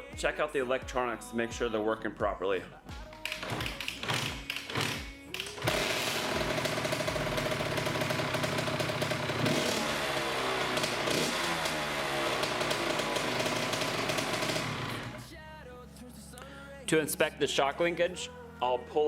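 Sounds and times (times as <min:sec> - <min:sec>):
two-stroke engine revving: 0:03.3 - 0:15.3.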